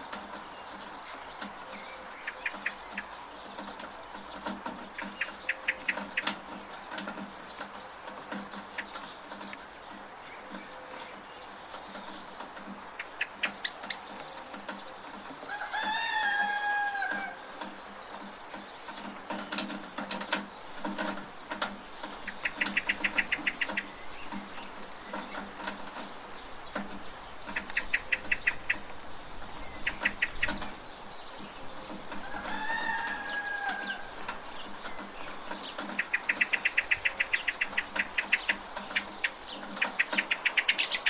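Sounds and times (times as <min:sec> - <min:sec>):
birds calling: 0:00.0 - 0:41.0.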